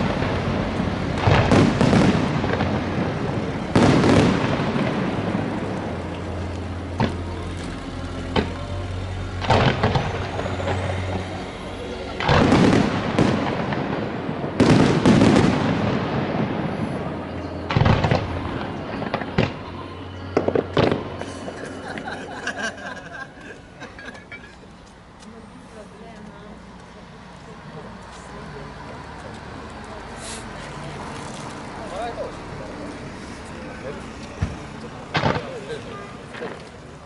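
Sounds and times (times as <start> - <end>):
sharp fireworks cracks: 0.0 - 22.2, 29.1 - 37.0
fireworks booming: 0.0 - 23.0, 34.4 - 37.0.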